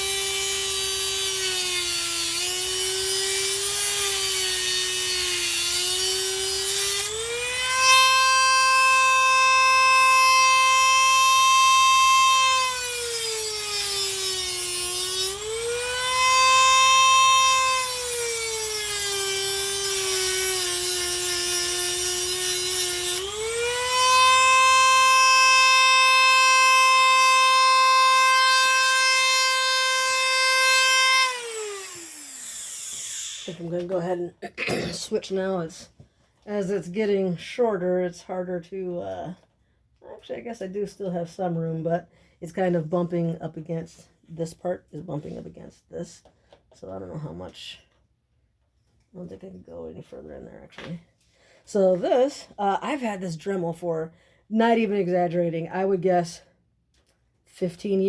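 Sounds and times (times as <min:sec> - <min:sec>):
rotary tool whining while cutting: 0:00.0 - 0:34.0.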